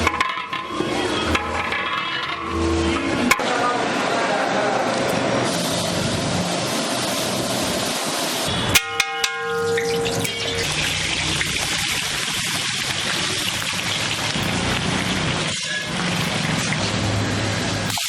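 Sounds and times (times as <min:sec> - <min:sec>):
food sizzling in a pan: 0:05.5 - 0:08.5, 0:09.4 - 0:16.9.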